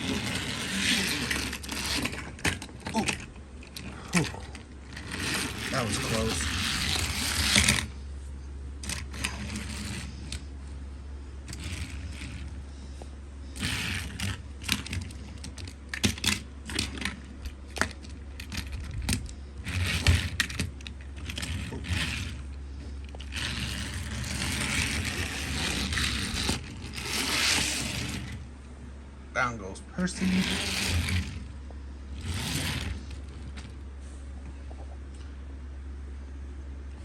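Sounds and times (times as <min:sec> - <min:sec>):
toy train clicking on plastic track: 0:00.0 - 0:03.2, 0:04.9 - 0:07.9, 0:08.8 - 0:10.4, 0:13.6 - 0:22.4, 0:23.3 - 0:28.4.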